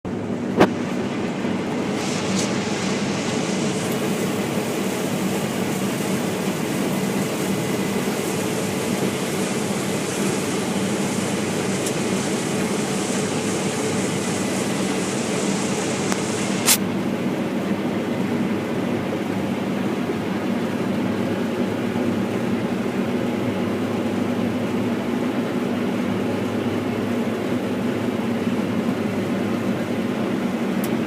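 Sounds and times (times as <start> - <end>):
combine harvester running: 0.0 - 31.0.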